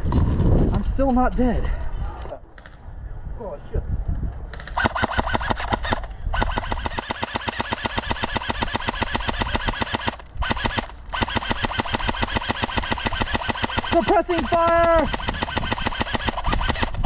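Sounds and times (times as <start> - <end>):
airsoft gun firing full auto: 4.6 - 17.0.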